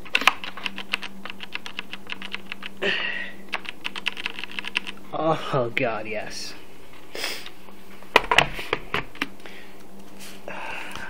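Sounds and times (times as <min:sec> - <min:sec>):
mechanical keyboard typing: 0:00.0 - 0:02.8, 0:03.5 - 0:05.0.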